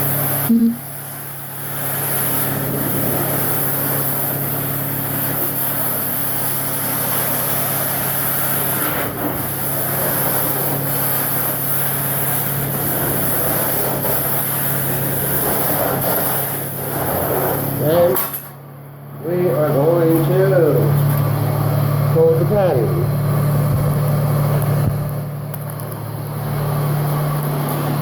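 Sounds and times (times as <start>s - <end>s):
constant low hum: 0.0s - 28.0s
carpet extractor vacuum suction: 1.6s - 18.1s.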